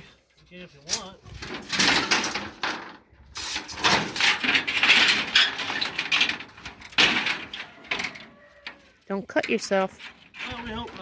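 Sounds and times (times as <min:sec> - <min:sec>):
sheet metal scraping and rattling: 0:00.6 - 0:11.0.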